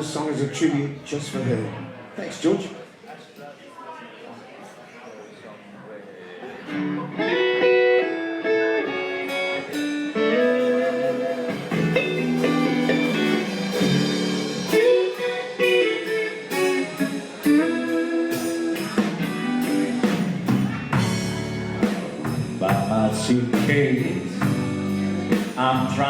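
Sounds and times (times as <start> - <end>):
bluesy guitar playing: 6.6 - 26.0.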